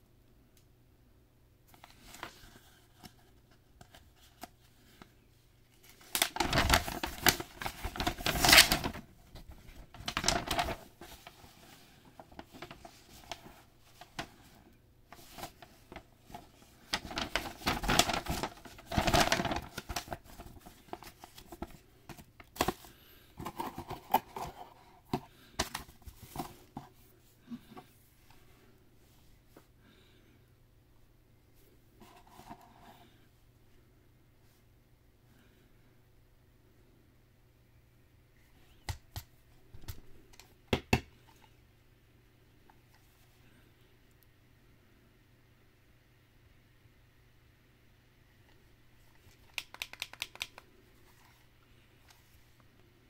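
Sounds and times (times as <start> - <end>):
packaging rustling and crinkling: 5.8 - 14.5, 15.1 - 24.6
clicks and taps: 49.4 - 50.7.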